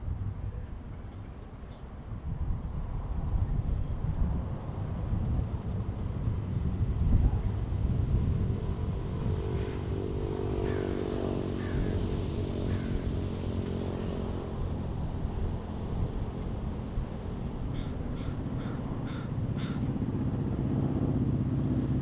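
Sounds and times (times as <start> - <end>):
low outdoor rumble: 2.6 - 22.0
vehicle engine passing by: 7.3 - 19.8
bird calls: 17.7 - 19.8.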